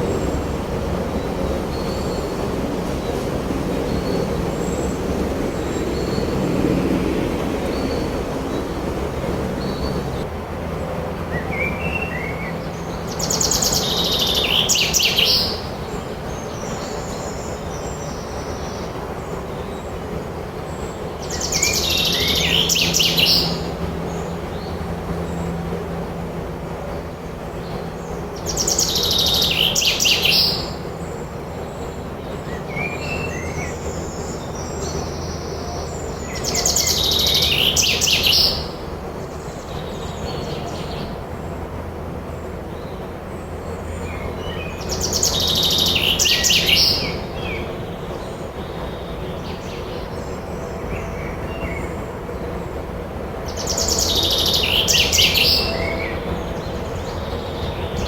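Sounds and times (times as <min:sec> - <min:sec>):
songbird trilling: 0:00.0 - 0:10.2, 0:32.5 - 0:38.9, 0:44.1 - 0:48.2, 0:53.4 - 0:58.0
low rumble: 0:00.0 - 0:10.3.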